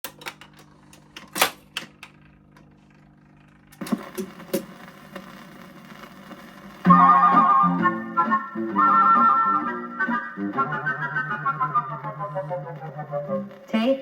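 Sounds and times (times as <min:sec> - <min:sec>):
record clicks and crackles: 0:00.0 - 0:14.0
record hiss with pops: 0:00.1 - 0:14.0.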